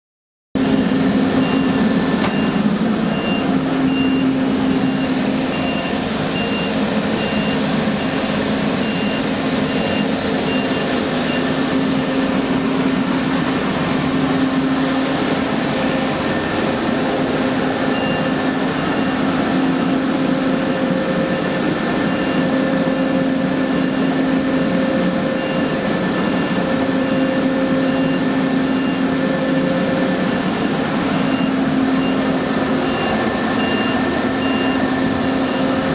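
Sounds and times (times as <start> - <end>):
air compressor humming: 0.6 - 35.9
high electronic beeps: 0.7 - 8.2.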